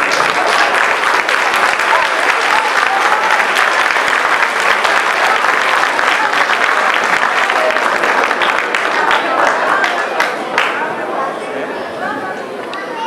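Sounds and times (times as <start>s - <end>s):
audience applauding: 0.0s - 11.6s
faint voices calling out: 4.9s - 13.0s.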